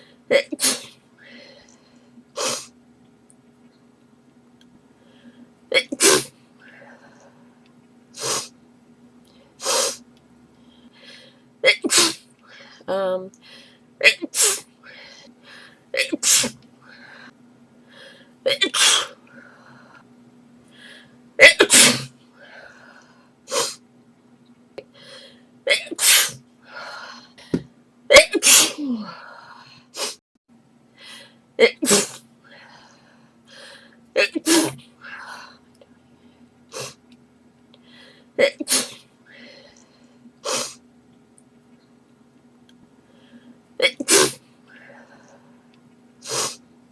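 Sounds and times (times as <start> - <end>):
faint breaths: 1.2 - 2.7, 4.9 - 5.6, 9.2 - 11.6, 12.4 - 13.9, 14.8 - 15.9, 16.8 - 18.4, 19.2 - 21.2, 22.3 - 23.4, 24.9 - 25.5, 32.4 - 34.1, 37.8 - 38.4, 39.2 - 40.8, 43.0 - 43.7, 44.5 - 45.8
girl sneezing: 11.7 - 12.2, 14.0 - 14.7, 21.4 - 22.1, 28.1 - 29.1, 34.2 - 34.8, 43.8 - 44.4.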